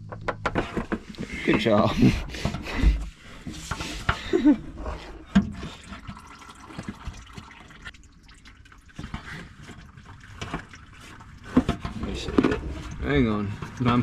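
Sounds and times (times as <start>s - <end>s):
fluid pouring into a pan: 5.5s - 14.0s.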